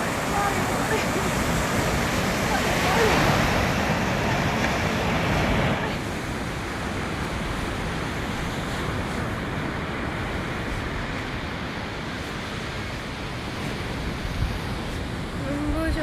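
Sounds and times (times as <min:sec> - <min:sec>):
sea surf washing up a beach: 0:00.0 - 0:16.0.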